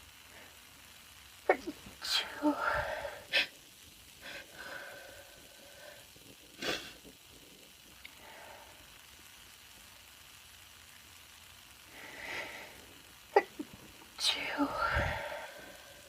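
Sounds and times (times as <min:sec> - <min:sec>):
woman sniffing: 0:06.6 - 0:07.0.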